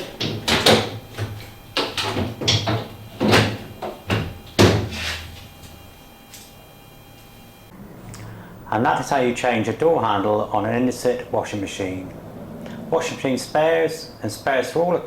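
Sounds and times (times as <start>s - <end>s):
washing machine panel knocks: 0.0s - 5.0s.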